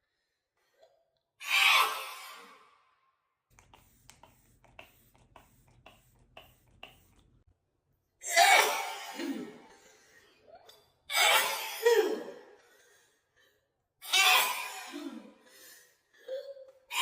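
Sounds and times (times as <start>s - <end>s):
woman sneezing: 8.2s - 9.7s, 11.1s - 12.4s.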